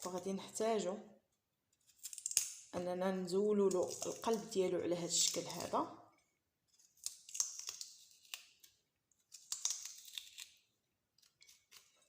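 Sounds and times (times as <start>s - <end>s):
knife crunching into turnip: 9.3s - 10.6s.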